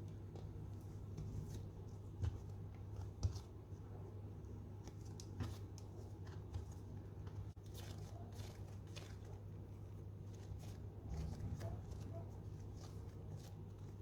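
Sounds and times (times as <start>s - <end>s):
hands rustling and tapping: 0.0s - 3.7s, 4.6s - 9.6s.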